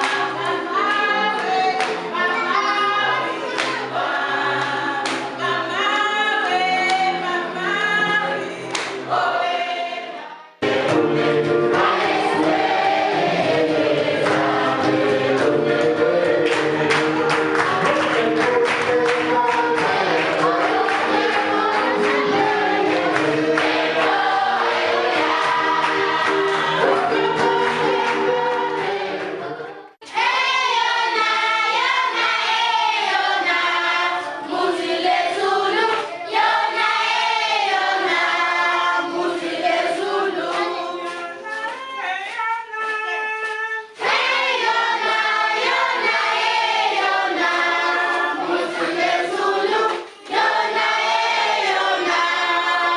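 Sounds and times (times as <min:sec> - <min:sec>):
choir singing gospel music: 0:00.0 - 0:42.7, 0:43.8 - 0:52.9
sharp percussive beats: 0:10.6 - 0:29.1.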